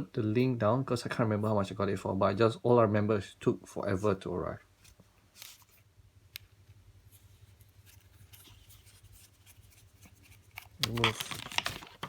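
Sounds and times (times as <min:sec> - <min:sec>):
low steady hum: 0:00.0 - 0:12.0
short rustles of parts: 0:07.1 - 0:12.0.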